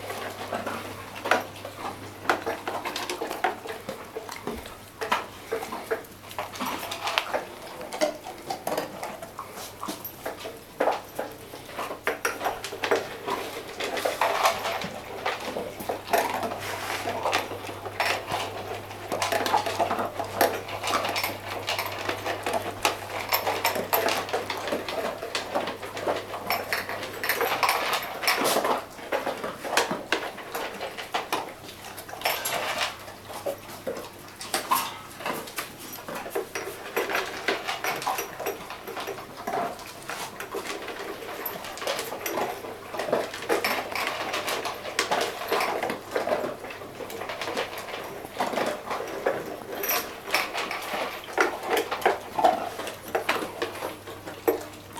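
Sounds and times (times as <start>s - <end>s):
dog chewing and licking: 0.0s - 54.9s
food bowl clinking: 34.6s - 35.6s.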